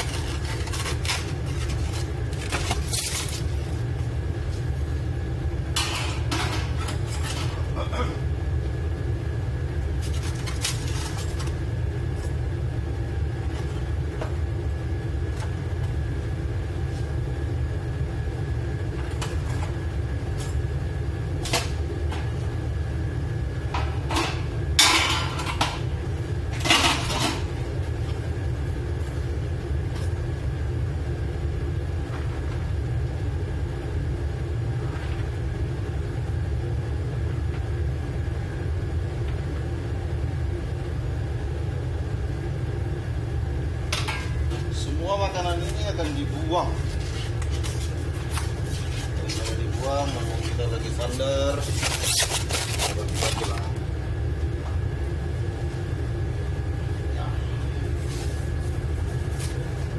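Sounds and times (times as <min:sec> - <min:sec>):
ship machinery rumble and hum: 0:00.0 - 0:59.9
dishes clattering: 0:05.8 - 0:08.1, 0:23.8 - 0:25.9, 0:26.6 - 0:27.6.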